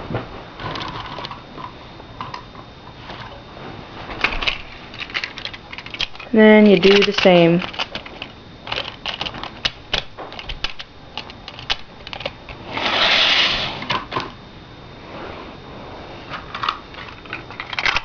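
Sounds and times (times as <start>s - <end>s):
brief scraping hiss: 12.8s - 13.8s.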